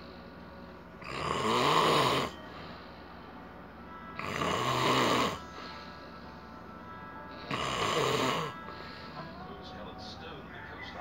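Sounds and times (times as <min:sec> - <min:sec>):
man snoring loudly: 0:01.0 - 0:02.4, 0:04.2 - 0:05.4, 0:07.5 - 0:08.6
quiet breathing: 0:02.3 - 0:04.1, 0:05.4 - 0:07.6, 0:08.4 - 0:09.7.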